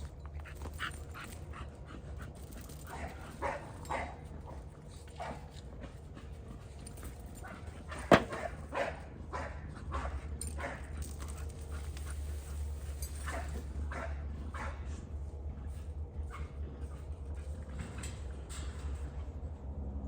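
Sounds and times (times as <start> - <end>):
dogs barking: 0.6 - 6.3, 7.1 - 12.2, 13.1 - 15.1.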